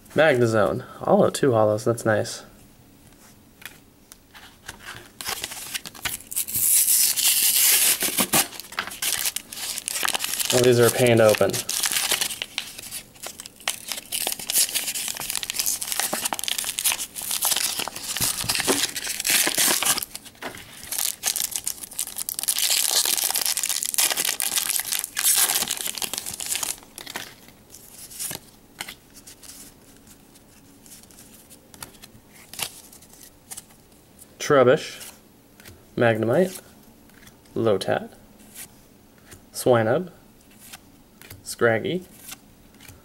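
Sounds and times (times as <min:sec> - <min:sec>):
plastic packaging crinkling and tearing: 0:04.7 - 0:33.8.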